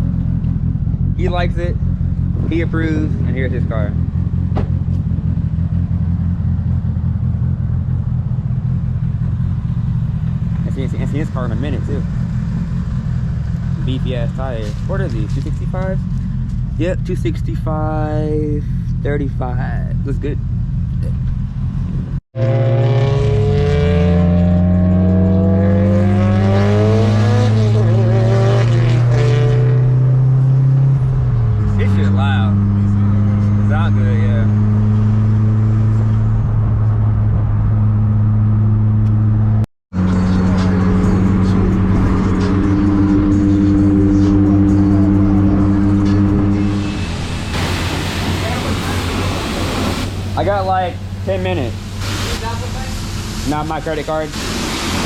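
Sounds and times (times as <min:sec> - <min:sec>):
car engine idling: 0:00.0 - 0:22.2, 0:35.9 - 0:55.0.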